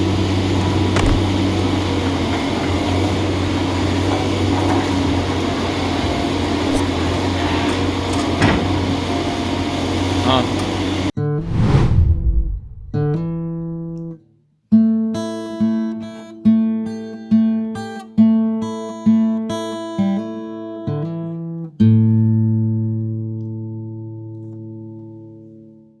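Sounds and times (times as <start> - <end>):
guitar chords strummed: 12.9 - 14.2.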